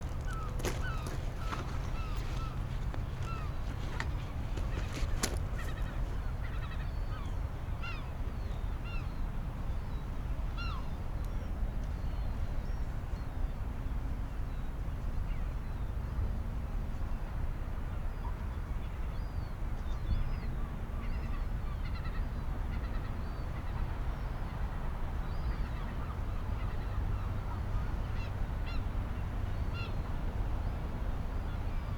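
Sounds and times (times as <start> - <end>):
seagulls calling: 0.0 - 7.3.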